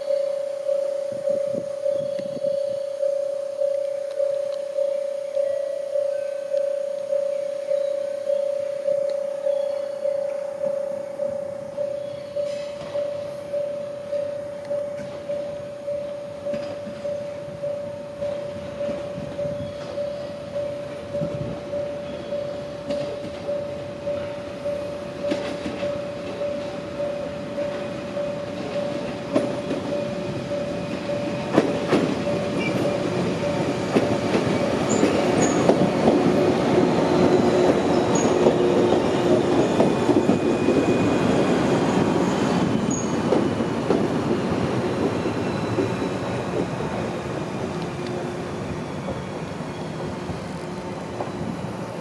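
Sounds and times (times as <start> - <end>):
faint high wheel squeal: 0.0 - 43.8, 44.4 - 47.7, 48.6 - 52.0
train wheels clattering over rails: 20.7 - 52.0.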